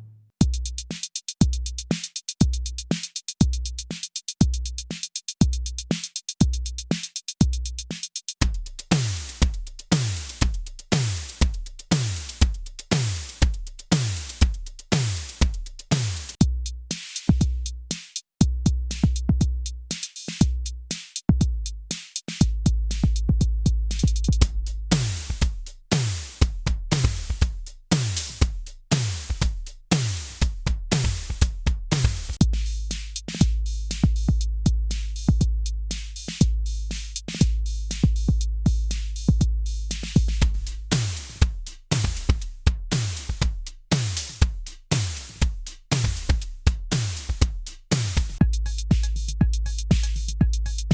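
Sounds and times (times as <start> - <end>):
drum machine beat: 0.4 - 50.9
sustained low bass notes: 48.4 - 50.9.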